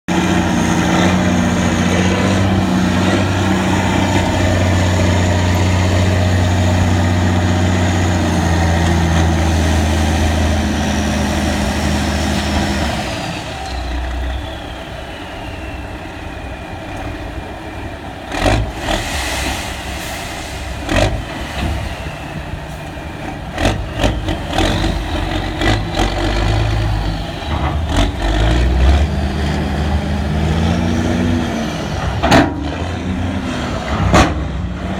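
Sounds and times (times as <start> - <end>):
diesel truck engine revving: 0.0 - 34.9.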